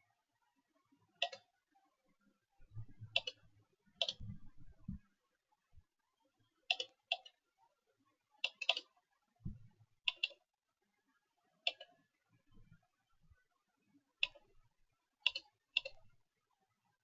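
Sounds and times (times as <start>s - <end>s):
computer mouse clicks: 1.2s - 1.5s, 3.1s - 3.4s, 4.0s - 4.4s, 6.7s - 7.4s, 8.4s - 9.0s, 10.1s - 10.4s, 11.7s - 12.0s, 14.2s - 14.5s, 15.2s - 16.0s
soft low thump: 9.4s - 9.7s.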